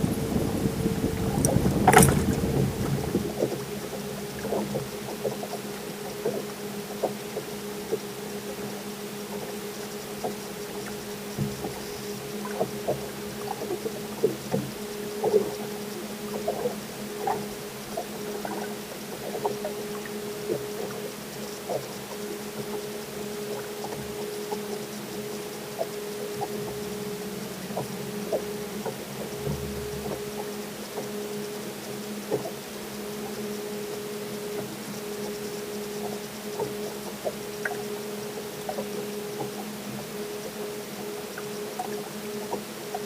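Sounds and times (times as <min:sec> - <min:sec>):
low rumble: 0:00.0 - 0:03.5
boat motor hum: 0:00.0 - 0:43.0.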